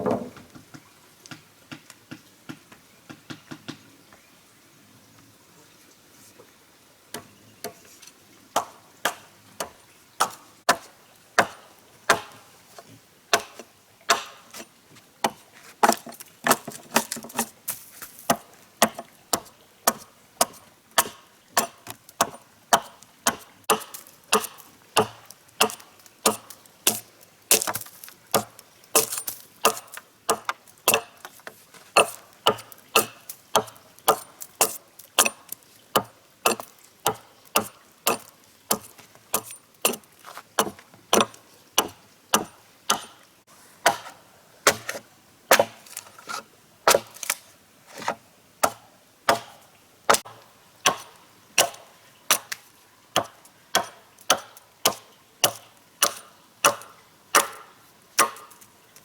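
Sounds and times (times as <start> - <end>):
blade chopping wood: 10.2 - 12.4, 13.3 - 14.5, 18.3 - 31.4, 32.0 - 43.2, 43.8 - 52.6, 53.2 - 58.5.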